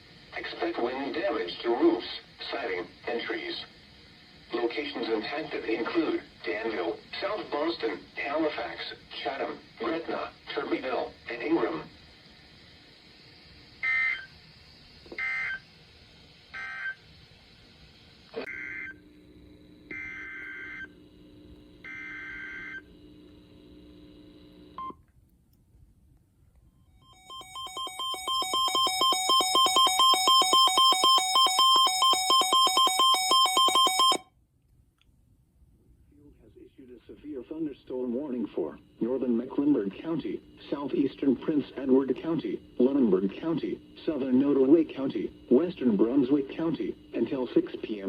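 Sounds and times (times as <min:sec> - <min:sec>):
two-tone attention signal: 0:27.0 - 0:34.3
screechy digital data bursts: 0:27.1 - 0:34.2.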